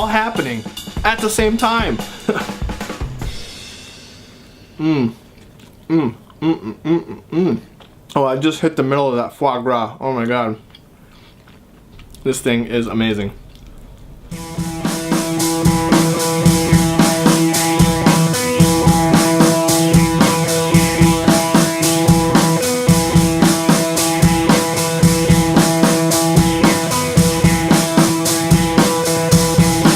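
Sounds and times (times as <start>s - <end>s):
rock music with drums and guitar: 0.0s - 4.8s, 14.3s - 29.9s.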